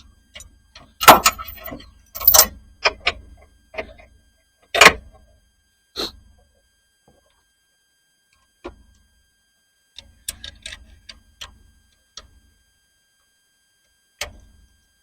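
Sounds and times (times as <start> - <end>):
objects knocking and clanking: 1.0 - 3.1.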